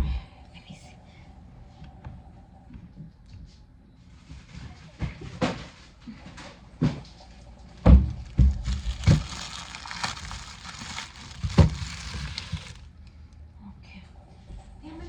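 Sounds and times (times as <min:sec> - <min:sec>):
kitchen items knocking and clunking: 0:08.4 - 0:12.8
dry rustling: 0:08.6 - 0:12.9.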